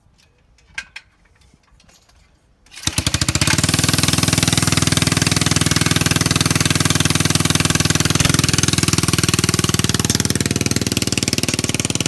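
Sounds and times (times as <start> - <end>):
small engine starting and running: 2.7 - 12.0.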